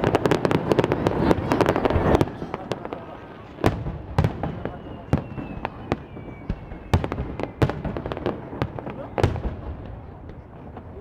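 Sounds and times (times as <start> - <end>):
fireworks bursting: 0.0 - 11.0
small firework pops: 0.0 - 11.0.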